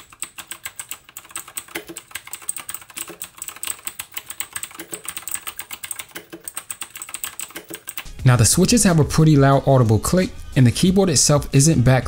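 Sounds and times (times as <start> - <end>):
clicky mechanical keyboard typing: 0.0 - 8.1.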